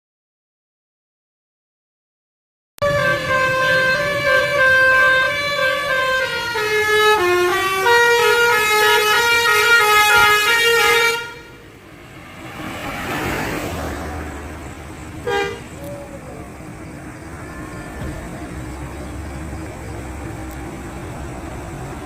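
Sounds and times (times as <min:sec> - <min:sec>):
musical air horn tune: 0:02.8 - 0:11.7, 0:15.2 - 0:15.8.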